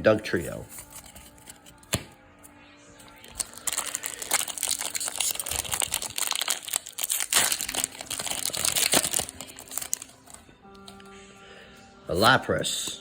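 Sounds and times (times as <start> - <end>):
foil wrapper crinkling: 3.1 - 10.4.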